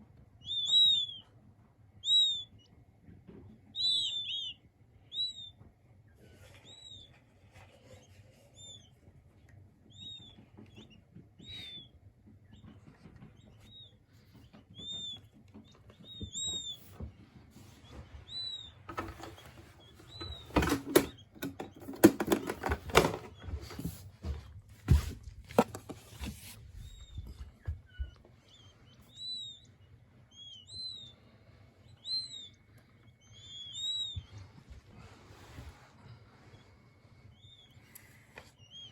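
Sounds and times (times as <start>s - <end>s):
quail chicks peeping: 0.2s - 38.9s
faint scratching and rustling: 12.6s - 29.1s.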